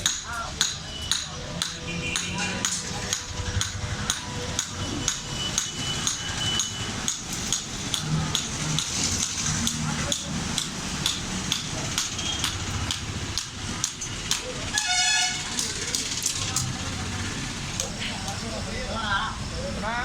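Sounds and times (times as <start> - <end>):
hammer on hot iron: 0.0 - 14.9.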